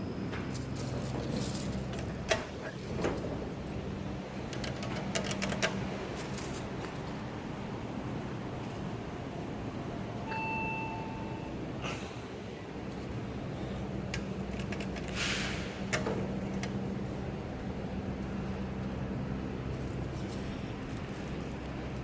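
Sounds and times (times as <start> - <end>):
elevator chime ding: 10.2 - 11.7.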